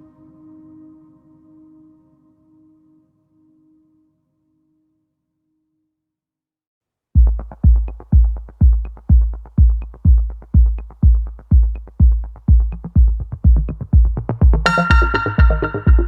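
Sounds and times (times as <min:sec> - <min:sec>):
electronic dance music: 0:07.2 - 0:16.0.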